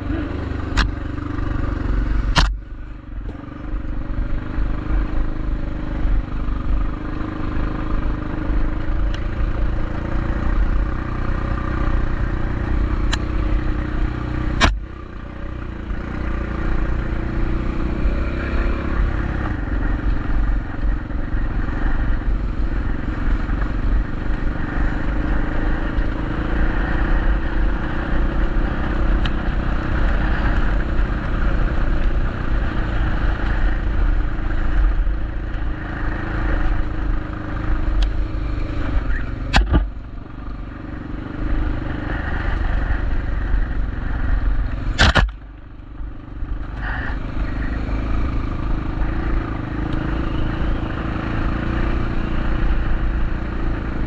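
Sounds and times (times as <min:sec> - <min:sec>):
bike riding rumble: 0:00.0 - 0:54.0
sharp knocks: 0:39.5 - 0:39.9, 0:45.0 - 0:45.4.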